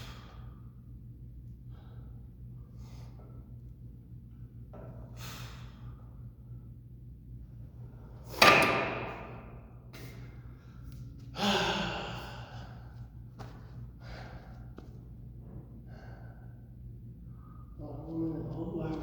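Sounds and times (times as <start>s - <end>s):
steady low hum: 0.0s - 19.0s
man exhaling hard: 11.4s - 12.8s.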